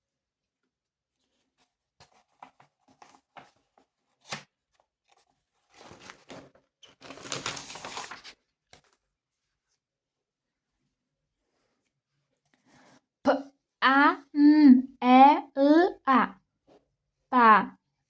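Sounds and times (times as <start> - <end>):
paper rustling and crackling: 1.2 - 9.7.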